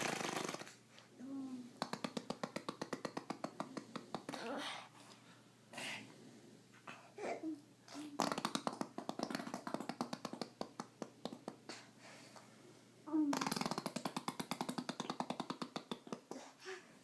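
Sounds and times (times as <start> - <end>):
baby blowing raspberries: 0.0 - 0.8.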